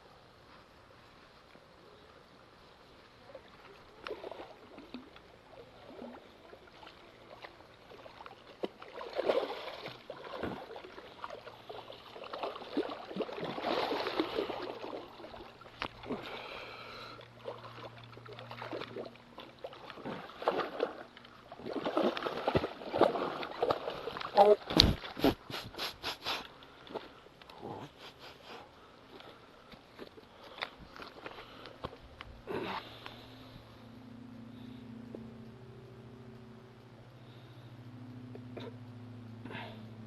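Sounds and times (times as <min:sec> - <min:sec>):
water splashing and sloshing: 0:02.6 - 0:33.7.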